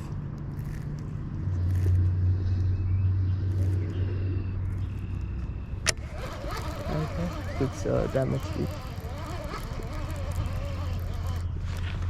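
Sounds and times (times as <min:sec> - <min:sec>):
low motor hum: 0:00.0 - 0:12.0.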